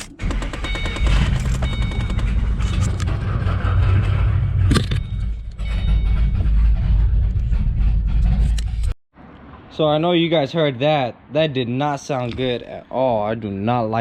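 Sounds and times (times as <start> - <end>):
misfiring car engine: 0.0 - 8.8.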